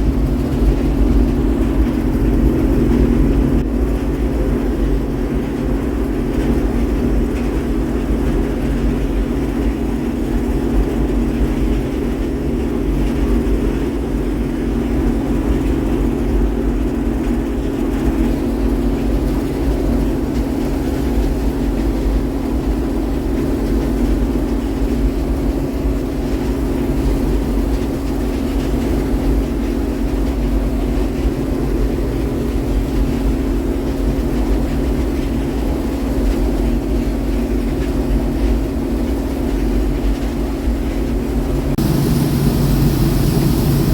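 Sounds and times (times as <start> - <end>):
harvesting machine engine drone: 38.7 - 43.9.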